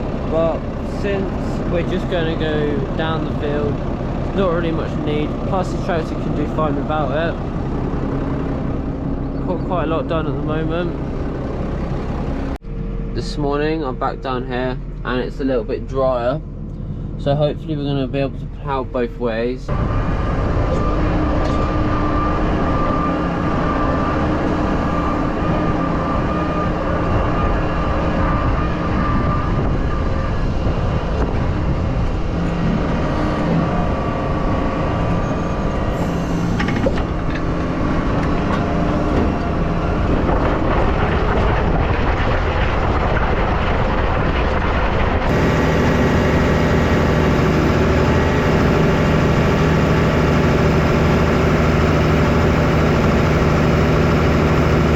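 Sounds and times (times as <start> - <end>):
tractor engine running: 0.0 - 54.9.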